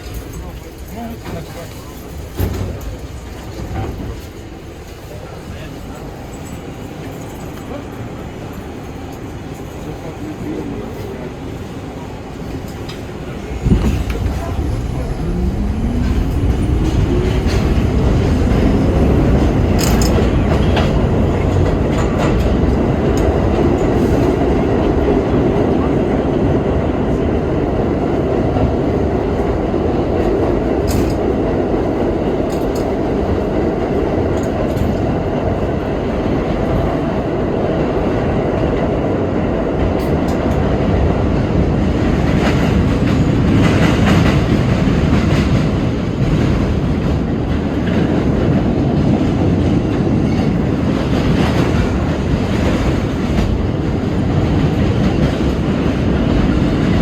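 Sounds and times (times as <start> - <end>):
train running noise: 0.0 - 57.0
subway motor whine: 8.2 - 57.0
wheels clacking over rail joints: 12.6 - 25.0.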